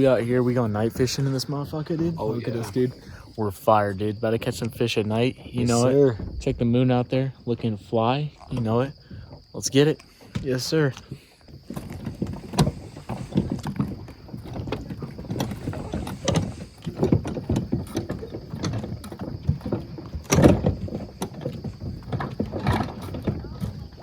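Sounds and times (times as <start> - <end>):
crickets chirping: 0.0 - 24.0
knocks bumps and rustles: 10.3 - 24.0.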